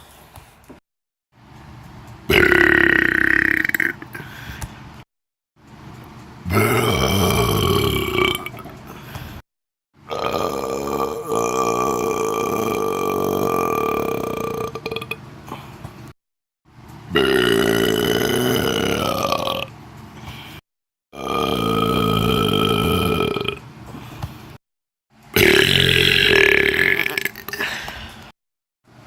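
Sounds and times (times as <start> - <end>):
long belches: 2.3 - 4.1, 6.5 - 8.7, 10.1 - 15.2, 17.1 - 19.7, 21.2 - 23.6, 25.4 - 27.6.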